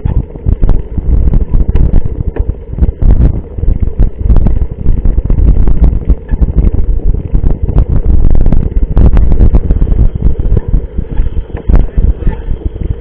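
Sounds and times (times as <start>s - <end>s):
bike knocks and rattles: 0.0s - 3.2s, 9.6s - 13.0s
wind buffeting on microphone: 0.0s - 13.0s.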